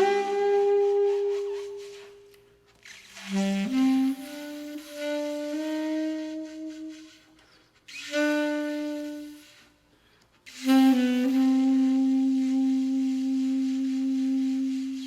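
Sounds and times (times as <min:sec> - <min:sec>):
solo saxophone: 0:00.0 - 0:15.0.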